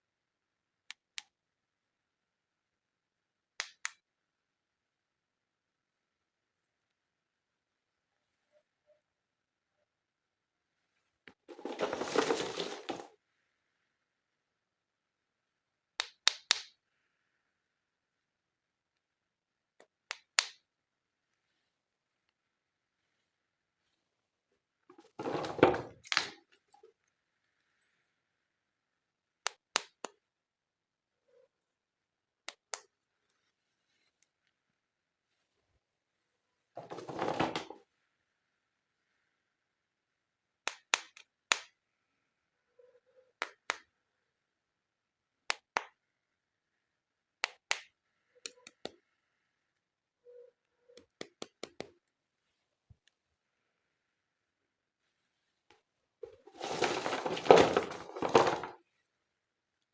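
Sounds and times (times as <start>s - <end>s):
plastic rustling: 11.5s - 13.1s, 56.2s - 58.8s.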